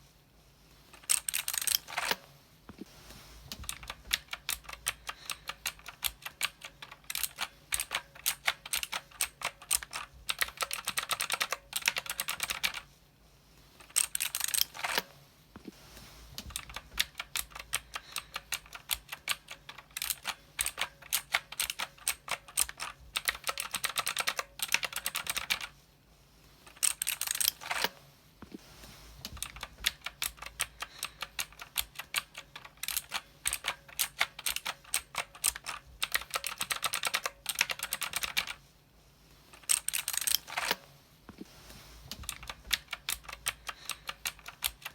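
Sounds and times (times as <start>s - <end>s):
typing on mechanical keyboard: 1.0s - 2.2s, 3.6s - 12.9s, 13.8s - 15.1s, 16.4s - 25.7s, 26.7s - 27.9s, 29.3s - 38.6s, 39.6s - 40.8s, 42.1s - 44.9s.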